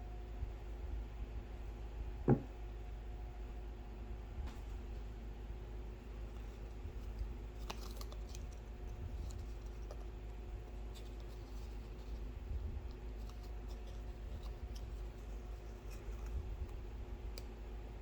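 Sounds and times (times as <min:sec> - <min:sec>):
handling clicks and scratches: 0:06.3 - 0:17.5.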